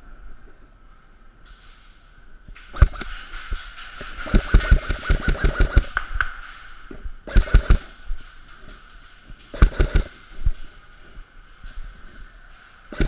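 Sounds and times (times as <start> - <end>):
airsoft guns firing: 2.7 - 8.0, 9.5 - 10.2.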